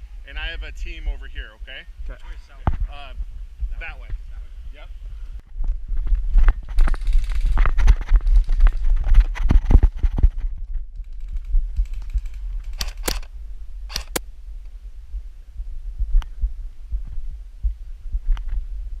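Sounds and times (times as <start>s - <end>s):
microphone handling rumble: 1.4s - 19.0s
sharp clicks: 11.0s - 13.3s, 13.9s - 14.3s.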